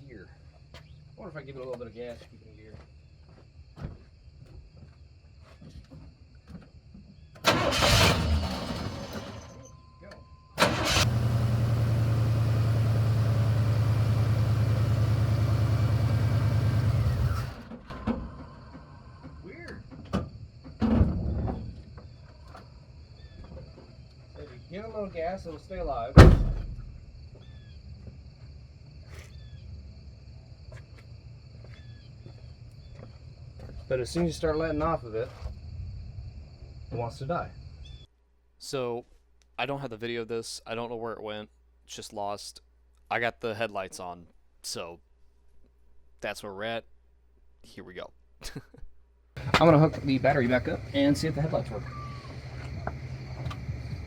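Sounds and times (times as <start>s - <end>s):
pickup engine starting and running: 7.4s - 9.7s, 10.6s - 19.4s, 49.4s - 54.0s
bird chirping: 27.4s - 27.9s, 37.8s - 38.1s, 49.4s - 54.0s.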